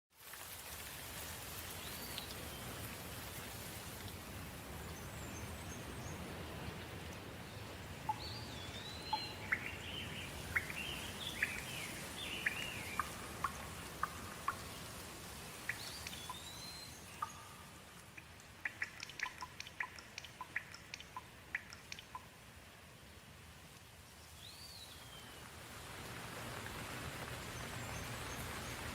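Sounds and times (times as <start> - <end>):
steady rain falling: 0.1 - 28.9
quick water drips: 0.2 - 22.7
birds chirping and calling: 8.1 - 14.7.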